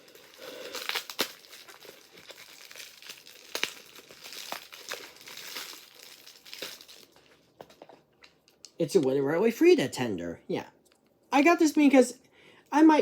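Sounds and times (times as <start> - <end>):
packaging crinkling: 0.0 - 8.6.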